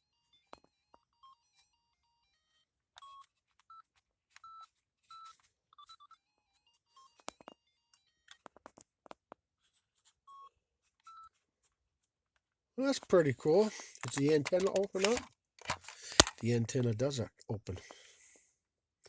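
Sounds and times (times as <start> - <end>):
plastic button clicks: 14.0 - 16.5.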